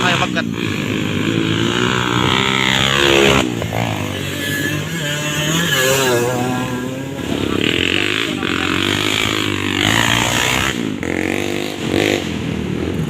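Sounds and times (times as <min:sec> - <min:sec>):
dirt bike engines revving: 0:00.0 - 0:13.0.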